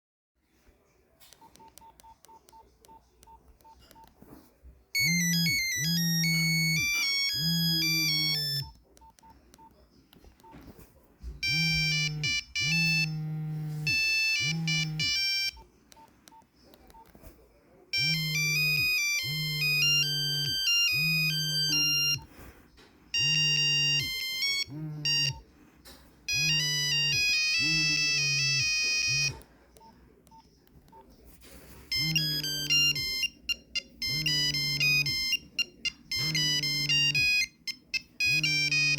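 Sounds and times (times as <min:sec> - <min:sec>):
phone monophonic ringtones: 0:05.0 - 0:08.8, 0:11.4 - 0:15.6, 0:18.0 - 0:22.3, 0:23.1 - 0:25.4, 0:26.3 - 0:29.4, 0:31.9 - 0:38.9.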